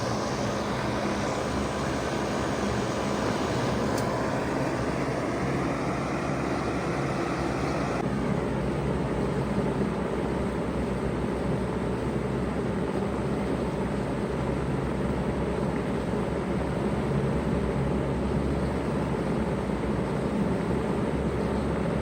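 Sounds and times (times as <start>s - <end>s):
fans rushing: 0.0s - 8.7s
compressor humming: 0.0s - 9.2s.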